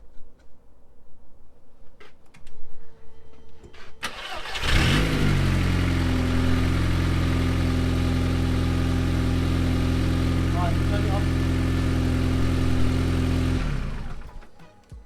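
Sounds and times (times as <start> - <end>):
car engine starting and idling: 3.3 - 14.6.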